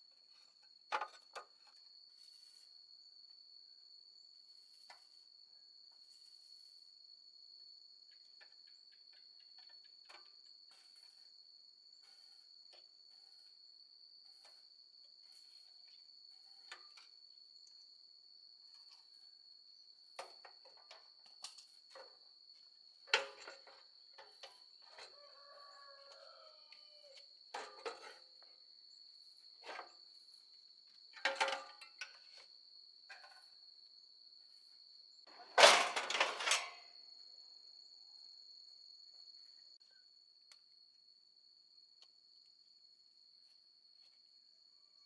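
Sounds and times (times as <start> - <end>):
crickets trilling: 13.2 - 40.9.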